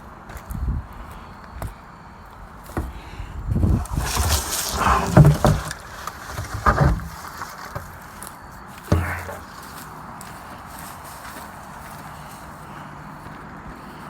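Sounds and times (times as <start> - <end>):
scrap metal thuds and knocks: 3.7 - 8.2, 8.8 - 9.7
metal scraping: 8.9 - 9.7.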